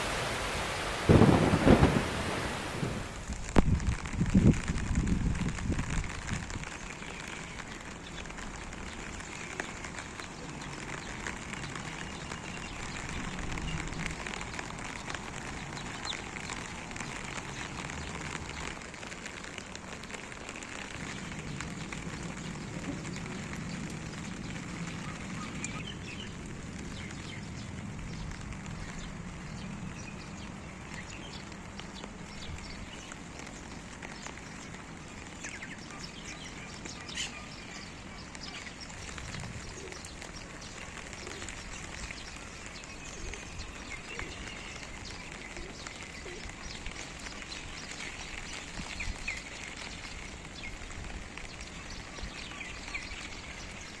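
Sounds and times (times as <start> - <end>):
light rain falling: 0.0 - 54.0
raindrops ticking on surfaces: 0.0 - 54.0
birds chirping: 20.4 - 54.0.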